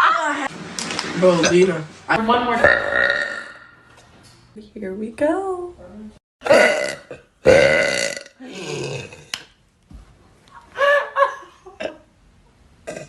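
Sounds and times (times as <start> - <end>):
girl burping: 2.6 - 3.7, 6.4 - 9.3.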